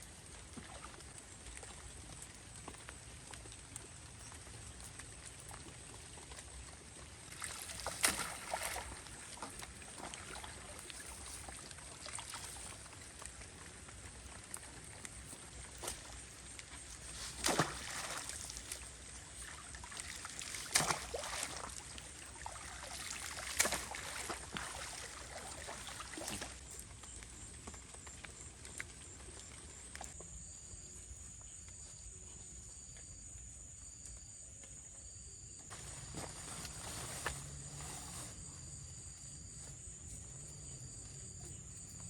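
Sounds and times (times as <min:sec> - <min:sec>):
water splashing and trickling: 0:00.0 - 0:30.2
sharp splashes: 0:07.3 - 0:13.0, 0:17.0 - 0:26.6.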